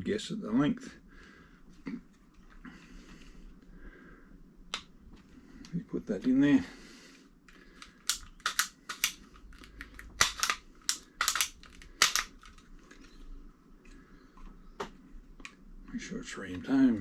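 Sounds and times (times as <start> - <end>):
small plastic parts clicking: 7.5 - 13.3.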